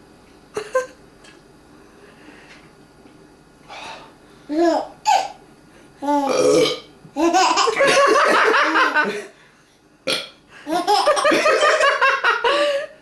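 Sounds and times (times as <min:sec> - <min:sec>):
loud drawn-out burps: 0:06.3 - 0:06.9, 0:10.0 - 0:10.4
laughter: 0:07.7 - 0:09.3, 0:11.0 - 0:12.9.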